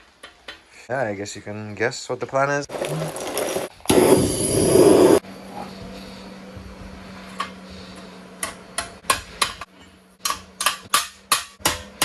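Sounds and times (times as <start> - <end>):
hammer striking steel: 8.4 - 12.0.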